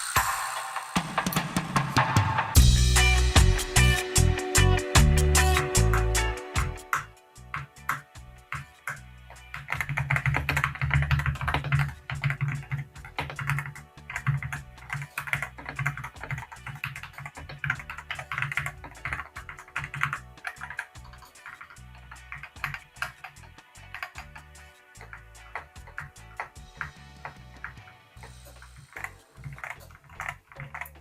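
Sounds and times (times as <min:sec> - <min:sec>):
mechanical keyboard clacking: 0:06.9 - 0:31.0.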